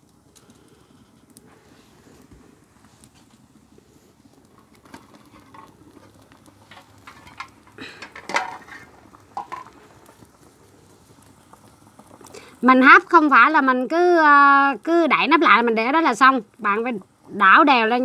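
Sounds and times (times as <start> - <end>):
utensil scraping a pot: 4.6 - 10.0.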